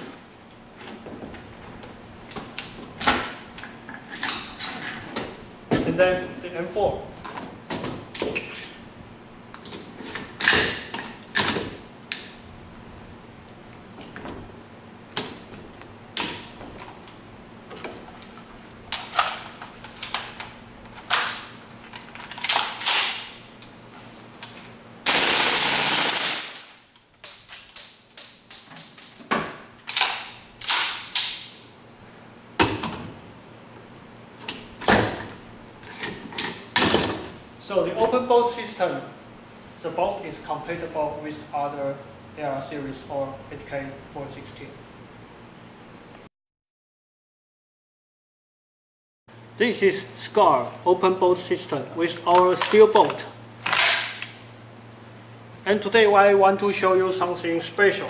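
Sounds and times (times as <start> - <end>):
airsoft rifle full-auto burst: 25.0 - 26.6.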